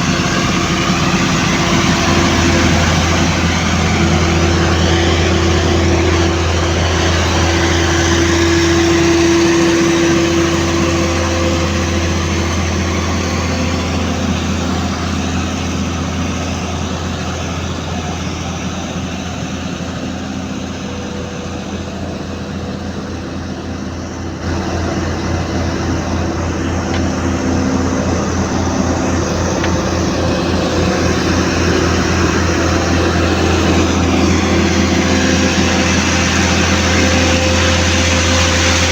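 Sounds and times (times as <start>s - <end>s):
heavy machine engine running: 0.0s - 38.9s.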